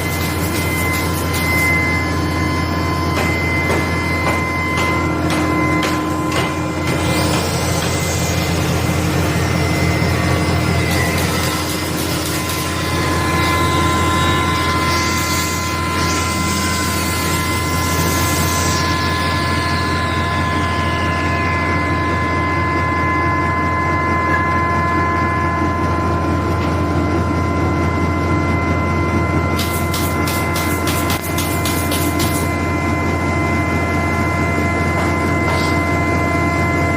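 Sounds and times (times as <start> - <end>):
grinding mill motor humming and whining: 0.0 - 36.9.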